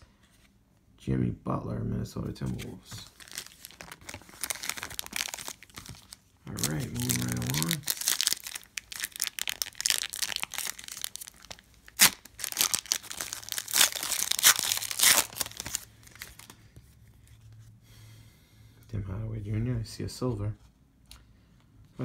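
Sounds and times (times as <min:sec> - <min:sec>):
card pack wrapper tearing: 0:03.1 - 0:16.5.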